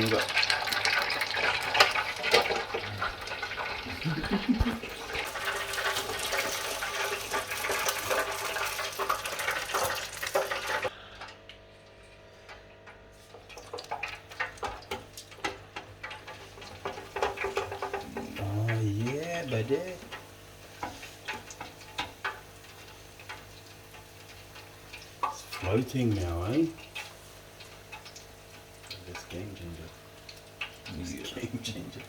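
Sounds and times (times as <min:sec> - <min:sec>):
fish deep frying in oil: 0:00.0 - 0:10.9, 0:12.7 - 0:32.0
faint hum: 0:10.9 - 0:13.0.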